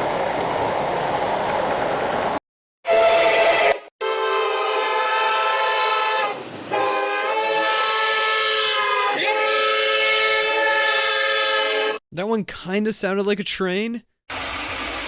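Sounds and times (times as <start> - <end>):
train horn blast: 2.8 - 12.0.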